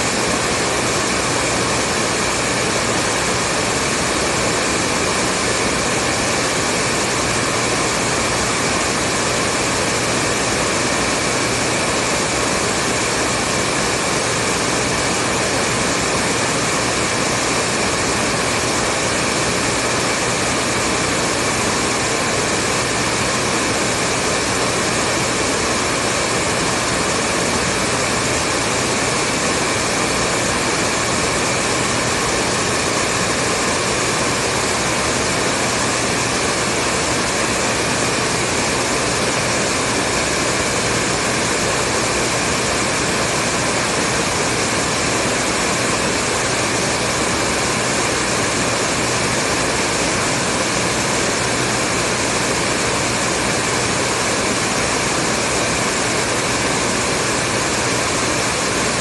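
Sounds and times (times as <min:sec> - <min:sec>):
hair dryer running: 0:00.0 - 0:59.0.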